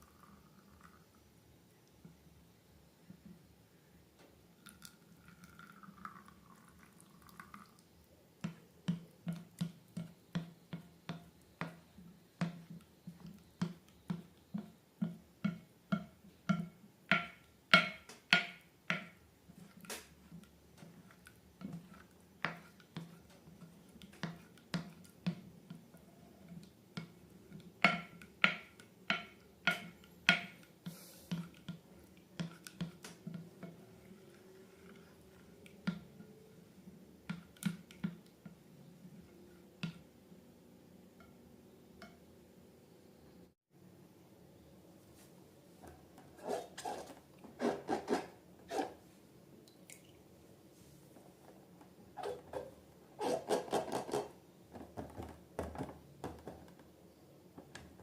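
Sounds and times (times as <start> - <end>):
faint squeak: 52.2 - 54.1.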